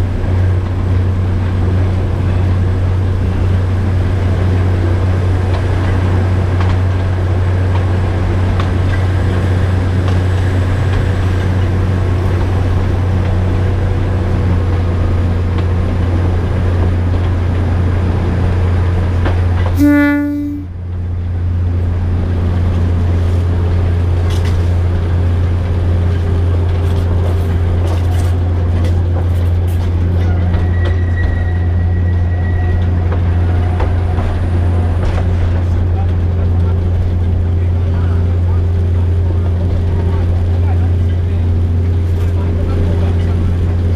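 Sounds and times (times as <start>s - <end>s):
wheels clicking on track: 0.0s - 19.7s, 22.4s - 43.9s
locomotive engine droning: 0.0s - 43.9s
train horn: 19.8s - 20.7s.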